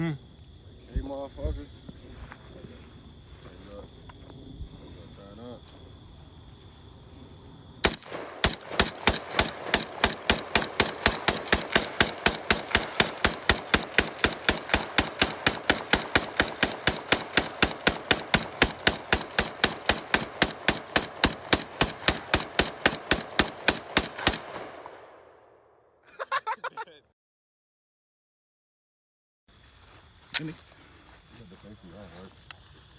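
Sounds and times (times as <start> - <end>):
rapid gunshots: 7.8 - 25.1.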